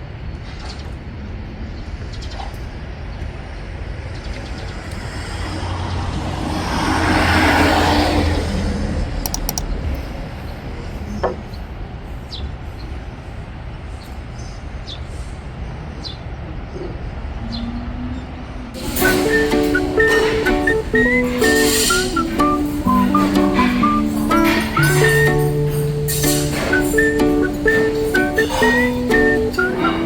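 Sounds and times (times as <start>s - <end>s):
road vehicle passing: 5.0s - 9.1s.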